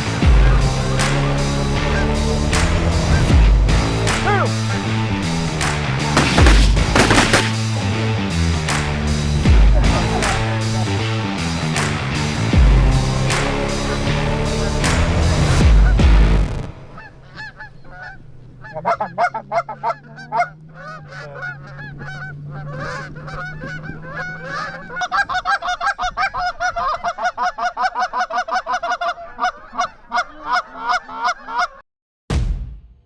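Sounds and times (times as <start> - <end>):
geese honking: 1.6 - 8.6, 16.8 - 31.8.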